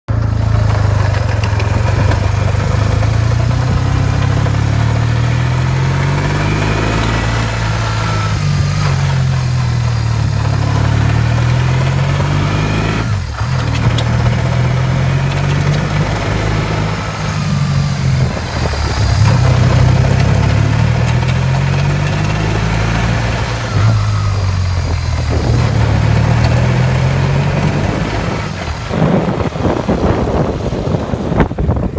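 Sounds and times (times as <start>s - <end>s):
motorcycle engine idling: 0.1s - 5.1s
engine ticking knock: 0.1s - 5.6s, 13.2s - 22.7s.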